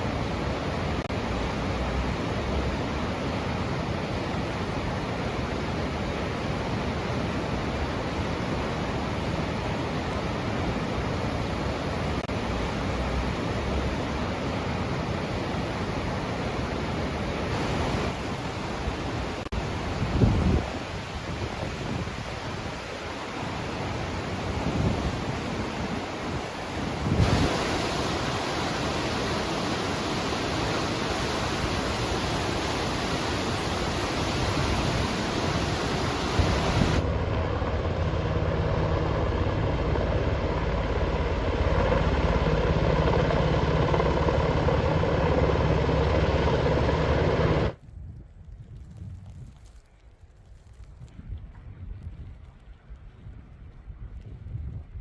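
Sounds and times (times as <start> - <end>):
rushing water: 0.0 - 47.8
wind roaring: 0.0 - 49.8, 50.6 - 55.0
low steady hum: 33.8 - 47.8.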